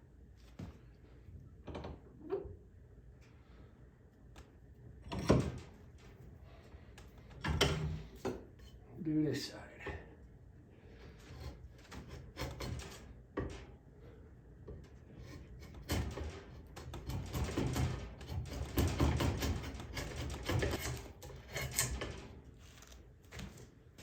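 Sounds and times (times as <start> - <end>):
hand tool shaving wood: 16.8 - 22.0.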